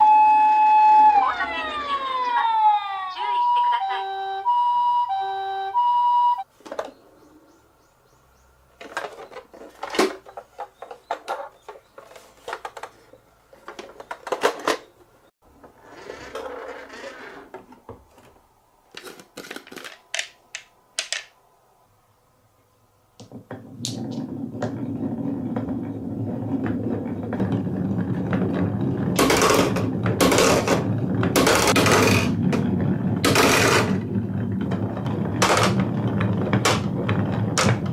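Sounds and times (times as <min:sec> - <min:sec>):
toy electronic siren: 0:00.0 - 0:06.4
marbles clattering on wooden track: 0:19.0 - 0:21.4, 0:23.2 - 0:37.9.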